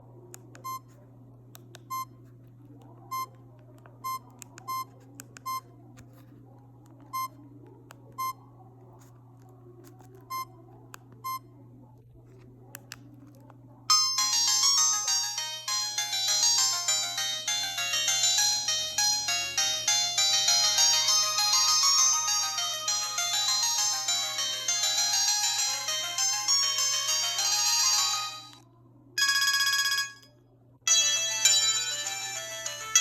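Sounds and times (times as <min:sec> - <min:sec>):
phone keypad beeps: 0:00.6 - 0:00.9, 0:01.8 - 0:02.2, 0:03.1 - 0:03.4, 0:04.0 - 0:05.7, 0:07.0 - 0:07.4, 0:08.2 - 0:08.4, 0:10.2 - 0:10.6, 0:11.2 - 0:11.5, 0:29.2 - 0:30.3
phone ringtone: 0:13.9 - 0:28.6, 0:29.2 - 0:33.0.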